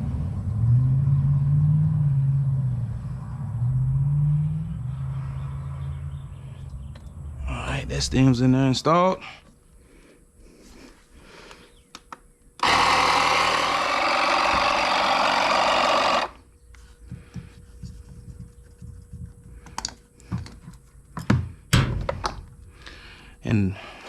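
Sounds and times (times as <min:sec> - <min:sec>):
handling knocks and clicks: 0:17.1 - 0:22.6.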